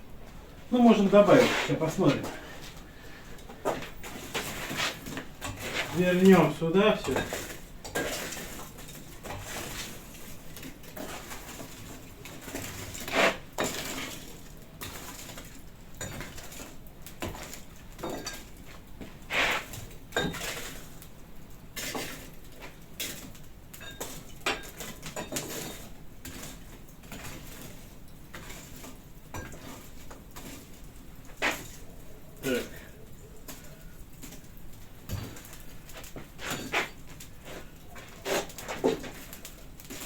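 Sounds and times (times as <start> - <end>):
steady low hiss: 0.0 - 7.2.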